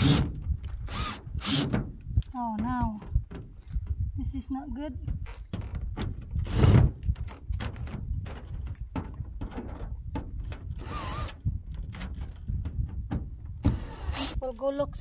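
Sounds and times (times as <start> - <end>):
wind rumble on microphone: 0.0 - 15.0
roof panel knocking and clattering: 7.6 - 10.6, 12.6 - 13.8.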